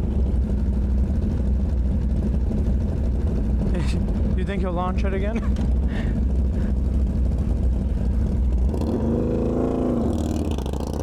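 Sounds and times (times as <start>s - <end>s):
steady low rumble: 0.0s - 8.7s
vehicle engine revving: 8.2s - 11.0s.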